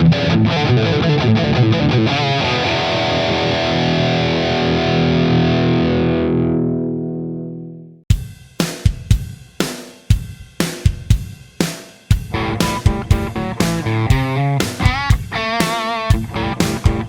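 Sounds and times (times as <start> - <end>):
distorted electric guitar: 0.0 - 7.9, 12.3 - 17.0
drum hits: 8.1 - 17.0.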